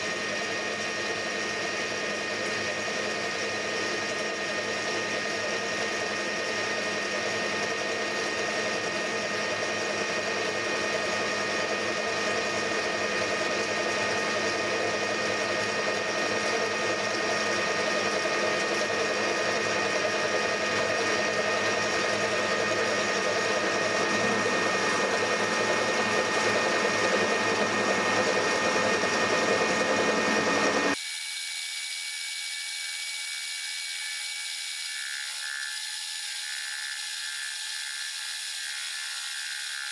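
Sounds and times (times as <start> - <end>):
metal lathe gear whine: 12.5 - 39.9.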